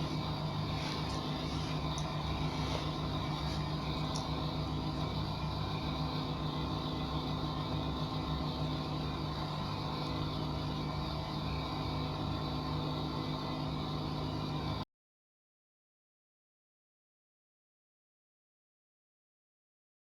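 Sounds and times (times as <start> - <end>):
steady mechanical hum: 0.0 - 14.8.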